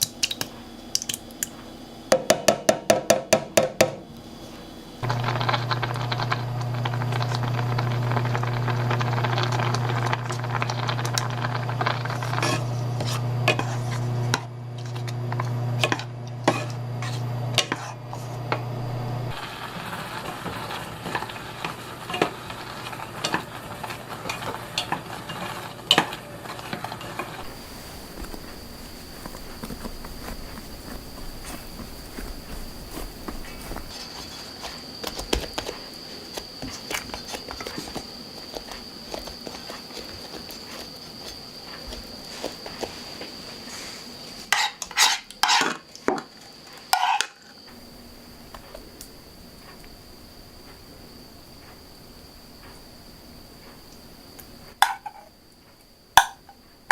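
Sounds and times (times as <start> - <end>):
sizzling hiss: 4.0 - 56.9
utensil stirring in a pan: 4.3 - 49.0.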